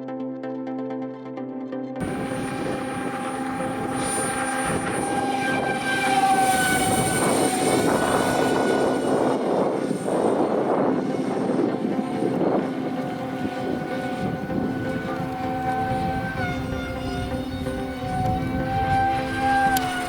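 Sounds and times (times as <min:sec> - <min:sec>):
electronic music: 0:00.0 - 0:20.0
electric motor whining: 0:02.0 - 0:20.0
wind rushing on microphone: 0:02.0 - 0:20.0.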